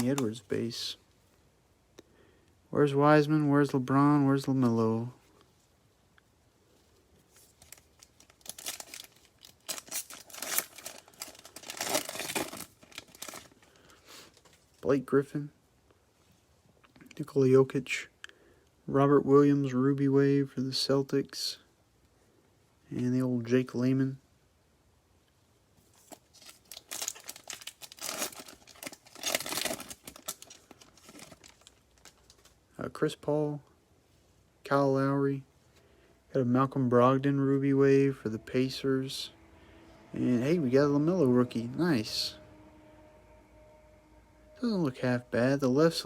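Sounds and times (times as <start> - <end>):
wrapper tearing and crinkling: 0.0 - 0.3, 7.4 - 14.7, 26.0 - 32.6.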